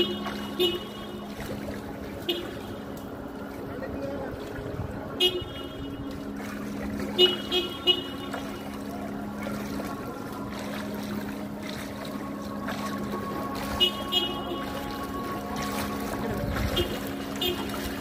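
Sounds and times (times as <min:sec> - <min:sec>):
car horn tooting: 0:00.0 - 0:01.4, 0:02.2 - 0:02.9, 0:05.2 - 0:06.1, 0:07.2 - 0:08.7, 0:13.8 - 0:15.0, 0:16.6 - 0:18.0
vehicle hum: 0:00.0 - 0:18.0.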